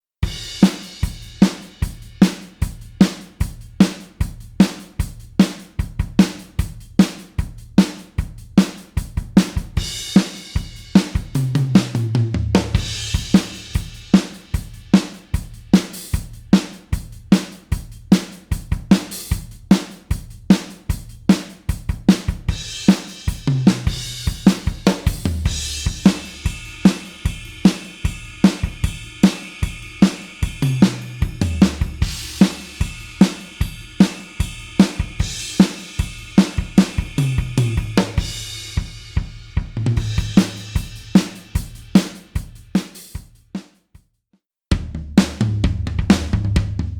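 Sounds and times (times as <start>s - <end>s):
rock drum beat: 0.2s - 43.8s, 44.7s - 46.9s
low drum fill: 9.2s - 17.2s, 21.8s - 42.5s, 44.8s - 46.9s
cymbal crashes: 22.6s - 39.4s.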